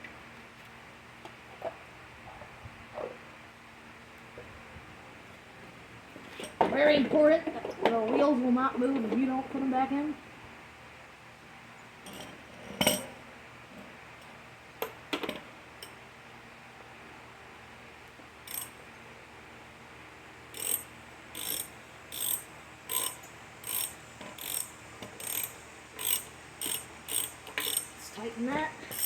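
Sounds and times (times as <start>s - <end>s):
ratchet wrench clicking: 18.5s - 18.8s, 20.5s - 27.9s
metal parts clicking and knocking: 21.4s - 27.9s.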